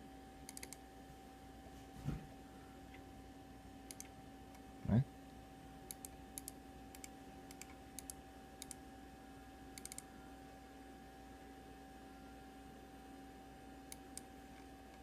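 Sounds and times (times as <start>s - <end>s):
faint electrical hum: 0.0s - 15.0s
computer mouse clicks: 0.4s - 0.8s, 3.9s - 4.6s, 5.9s - 8.8s, 9.8s - 10.1s, 13.9s - 15.0s.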